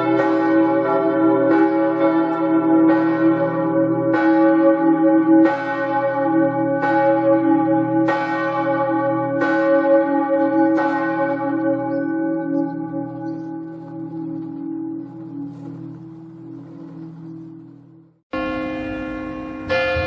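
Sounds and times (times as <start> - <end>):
church bell tolling: 0.0 - 20.0
deep hum: 12.9 - 18.2.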